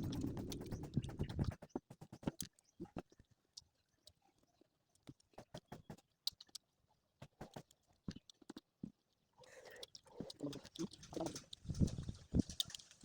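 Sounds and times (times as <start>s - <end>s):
faint chewing mouth clicks: 5.1s - 6.7s, 7.4s - 13.0s.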